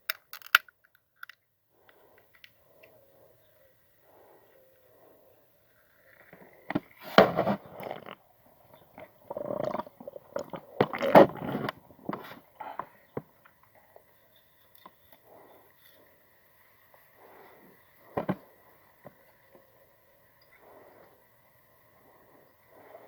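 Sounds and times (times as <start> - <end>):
mouth clicks: 7.8 - 12.9.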